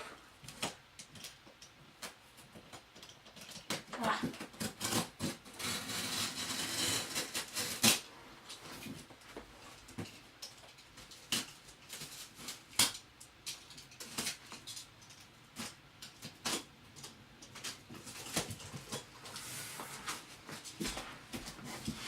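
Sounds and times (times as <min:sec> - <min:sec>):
scraping rustle: 0:17.5 - 0:22.0.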